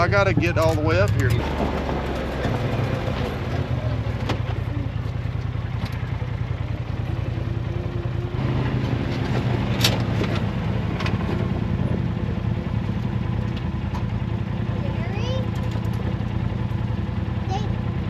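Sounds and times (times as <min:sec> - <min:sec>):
utv engine running at low speed: 0:00.0 - 0:18.0
sharp knocks and clicks: 0:00.3 - 0:02.8.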